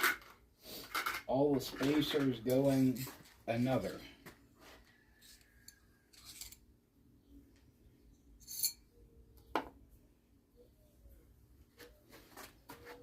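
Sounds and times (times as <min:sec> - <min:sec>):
small metal parts clicking: 0:05.2 - 0:06.6
bright metallic clink: 0:08.4 - 0:08.9.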